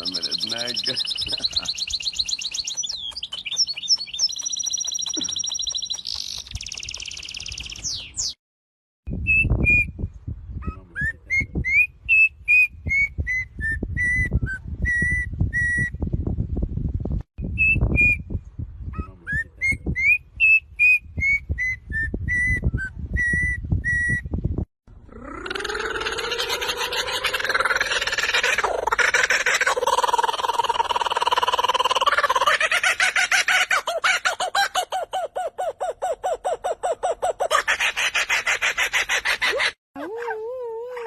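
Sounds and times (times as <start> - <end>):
songbird singing: 0.0 - 8.4
wind rumble on microphone: 9.1 - 28.8.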